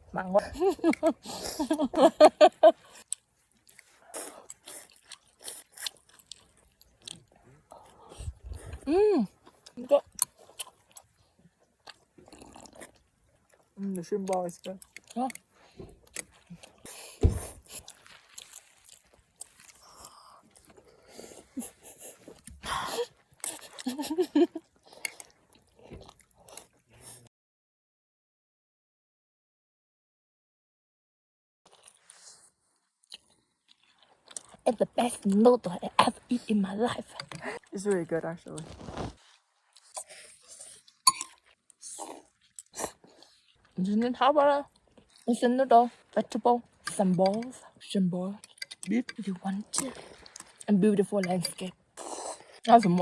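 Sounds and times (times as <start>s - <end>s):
person chewing noodles: 0.6s - 27.3s, 31.7s - 43.8s, 44.7s - 50.7s, 51.3s - 53.0s
noodle slurp: 52.0s - 52.8s.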